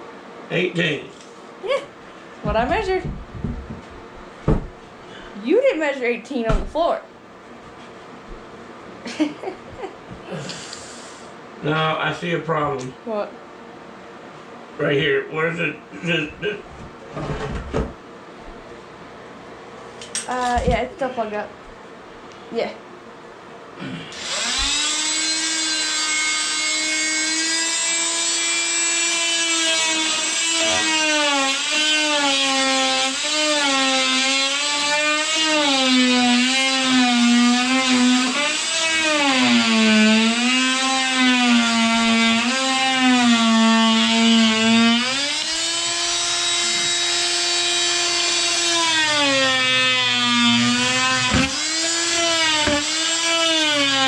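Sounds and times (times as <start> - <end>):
electric power tool cutting wood: 24.2 - 54.0.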